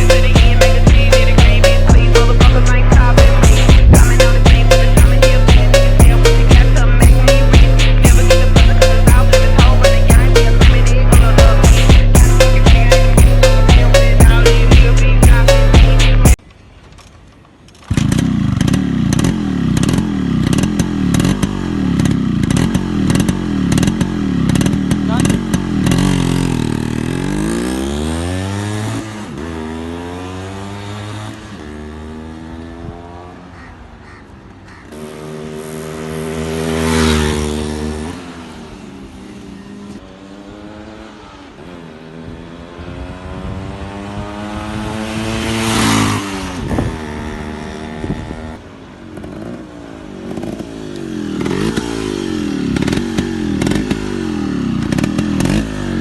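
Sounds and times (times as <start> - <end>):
motorcycle passing by: 17.9 - 56.0.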